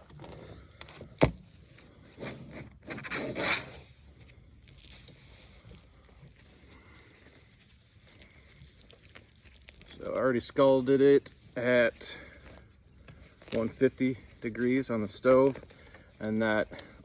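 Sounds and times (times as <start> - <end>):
soft rubbing: 1.4 - 16.7
feathers tearing: 2.0 - 10.8.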